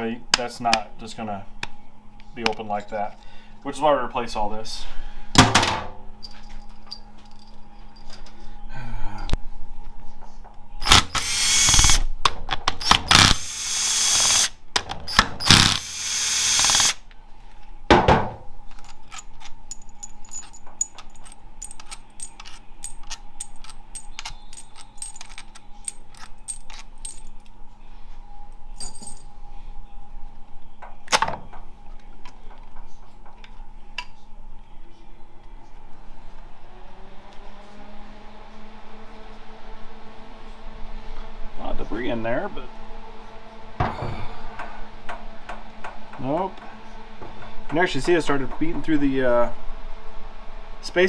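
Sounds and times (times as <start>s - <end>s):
cordless power tool running: 13.0s - 14.5s, 15.4s - 17.0s
small metal clicks and clinks: 18.7s - 27.5s.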